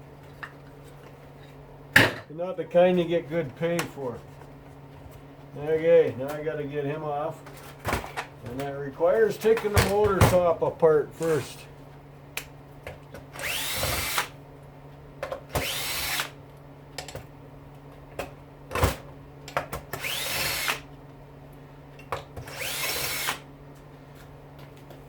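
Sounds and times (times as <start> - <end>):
cordless drill spinning: 13.4 - 14.3, 15.6 - 16.4, 20.0 - 20.8, 22.4 - 23.4.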